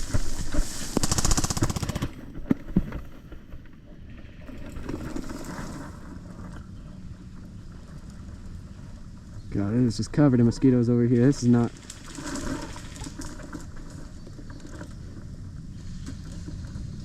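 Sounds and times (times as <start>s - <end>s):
airsoft rifle firing: 0.9s - 2.3s.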